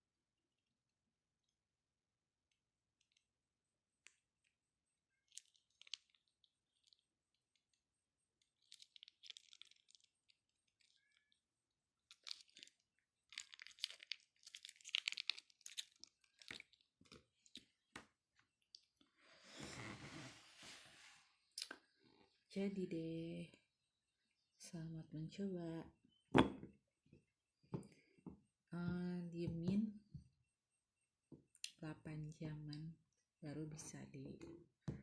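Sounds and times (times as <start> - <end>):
plastic sachets crinkling and clicking: 8.6 - 11.1, 12.1 - 17.7.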